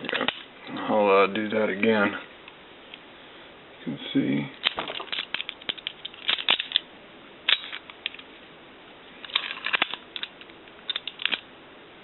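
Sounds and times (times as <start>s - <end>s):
lock pick clicking and scraping: 4.6s - 6.8s, 7.5s - 8.2s, 9.2s - 11.4s.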